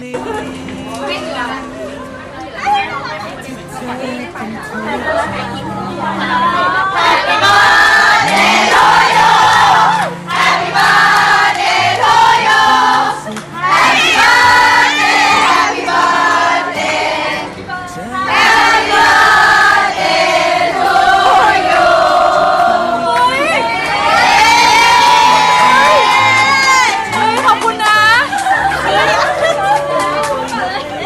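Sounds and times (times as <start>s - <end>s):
group of people singing: 3.7s - 27.7s.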